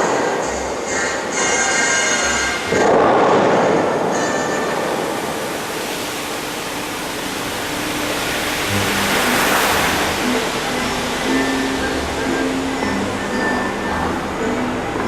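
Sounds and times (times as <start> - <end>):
fountain water spraying: 0.0 - 15.0
faint held music notes: 3.6 - 15.0.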